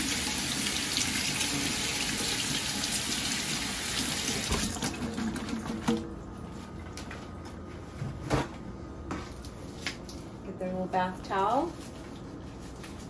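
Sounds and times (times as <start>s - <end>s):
water splashing from kitchen tap: 0.0s - 6.1s.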